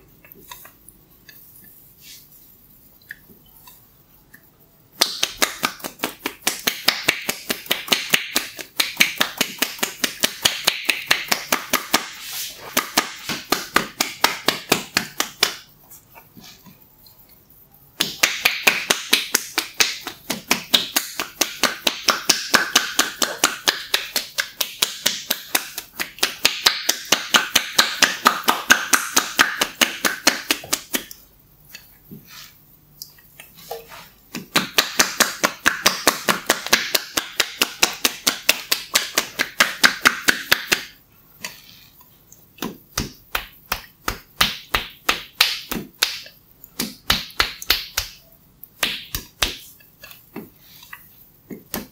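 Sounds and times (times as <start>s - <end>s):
hands tapping on head: 5.0s - 15.7s, 18.0s - 31.1s, 34.3s - 41.6s, 42.6s - 48.2s, 48.8s - 49.7s, 51.5s - 51.9s.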